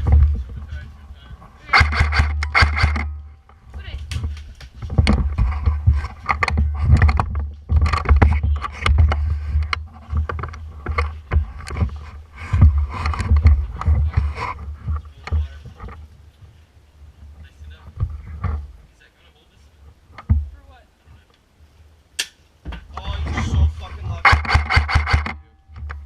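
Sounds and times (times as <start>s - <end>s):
irregular clicks and knocks: 0.0s - 16.2s, 19.8s - 20.6s, 22.2s - 26.0s.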